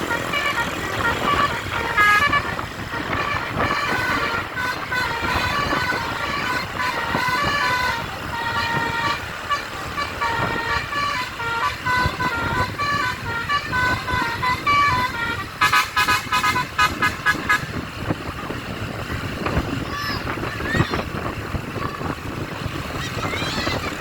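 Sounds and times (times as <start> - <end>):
bus horn playing a melody: 0.0 - 18.3.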